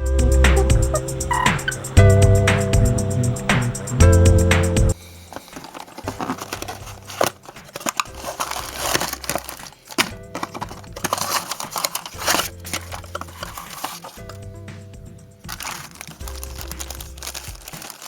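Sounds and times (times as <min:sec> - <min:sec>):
music: 0:00.0 - 0:18.0
packaging crinkling and rustling: 0:04.9 - 0:14.5, 0:15.4 - 0:18.0.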